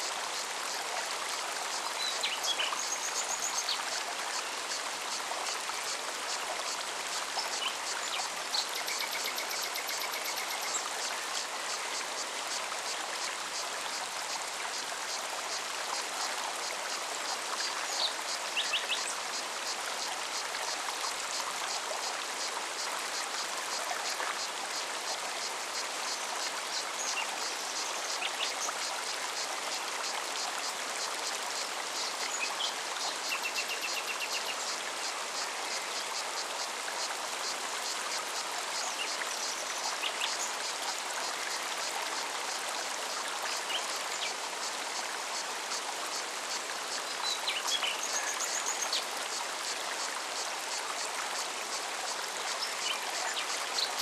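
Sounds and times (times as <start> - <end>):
stream running: 0.0 - 54.0.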